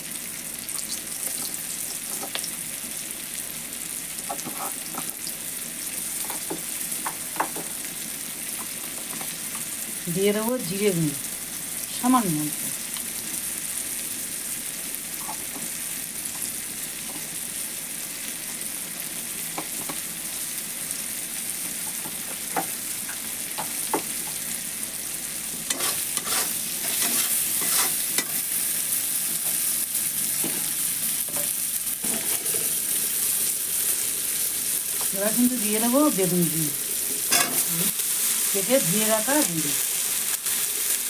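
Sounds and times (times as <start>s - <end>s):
food sizzling in hot oil: 0.0s - 41.0s
metal spatula scraping pan: 4.3s - 4.8s, 25.7s - 28.5s, 37.2s - 37.7s.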